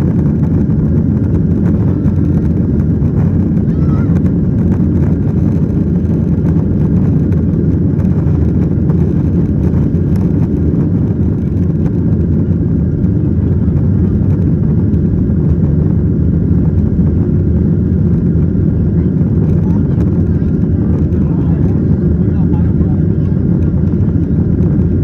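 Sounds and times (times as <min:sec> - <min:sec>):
air rushing around fuselage: 0:00.0 - 0:25.0
airplane cabin engine rumble: 0:00.0 - 0:25.0.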